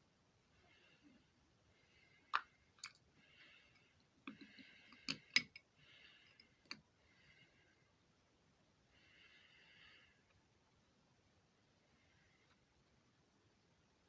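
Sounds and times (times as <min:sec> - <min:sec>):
small hard objects clicking: 0:02.3 - 0:03.0.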